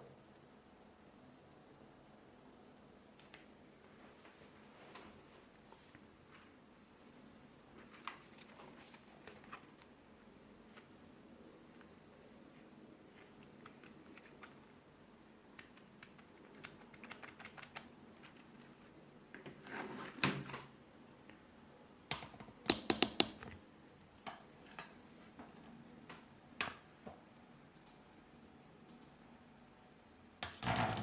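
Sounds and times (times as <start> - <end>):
keyboard typing: 13.1 - 14.6, 15.6 - 18.8, 22.1 - 23.6, 30.4 - 31.0.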